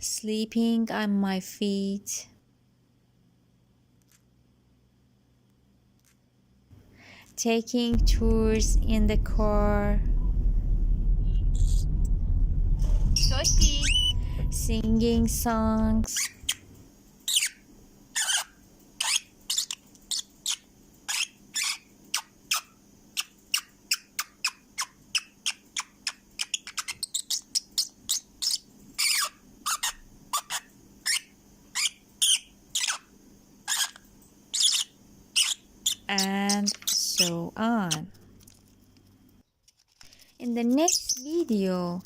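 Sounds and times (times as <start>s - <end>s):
parrot chirping and whistling: 13.1s - 14.5s, 16.1s - 16.6s, 17.3s - 17.6s, 18.2s - 33.1s, 33.7s - 37.3s.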